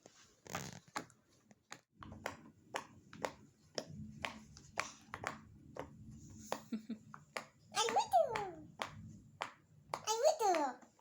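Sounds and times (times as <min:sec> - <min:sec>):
pop-it toy bubbles popping: 0:07.2 - 0:10.8.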